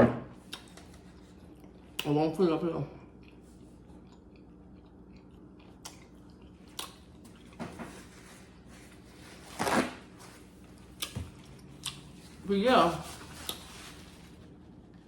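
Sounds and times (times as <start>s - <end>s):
person chewing: 0.4s - 2.1s, 3.0s - 7.6s, 10.4s - 12.4s, 13.2s - 13.8s.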